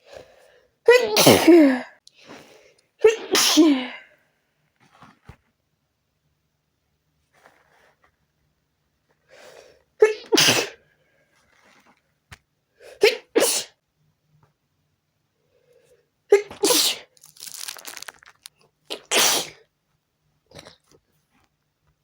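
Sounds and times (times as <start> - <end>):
woman sneezing: 0.9 - 1.9, 3.0 - 4.0, 10.0 - 10.8, 16.3 - 17.1, 19.1 - 19.6.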